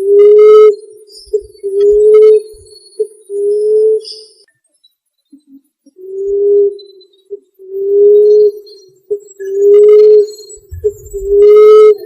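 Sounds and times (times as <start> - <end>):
dove cooing: 7.6 - 12.0.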